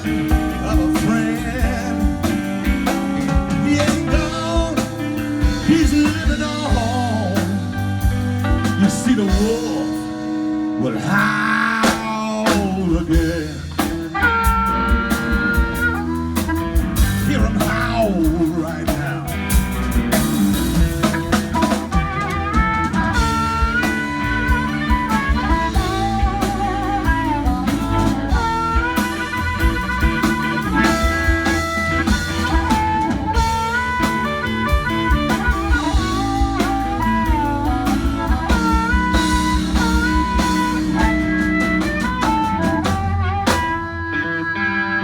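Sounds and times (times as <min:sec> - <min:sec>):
lead guitar solo: 0:00.0 - 0:12.4, 0:13.3 - 0:45.0
electric blues band playing: 0:00.0 - 0:45.0.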